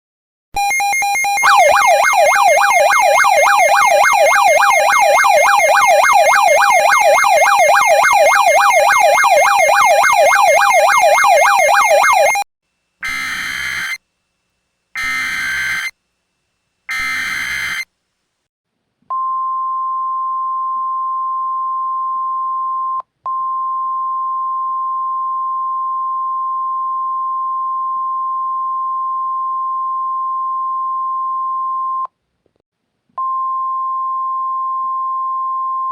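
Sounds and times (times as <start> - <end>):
electronic siren warbling: 0.6 - 12.4, 15.0 - 15.9
steady warning alarm tone: 0.6 - 12.4, 13.0 - 14.0, 15.0 - 15.9, 16.9 - 17.9.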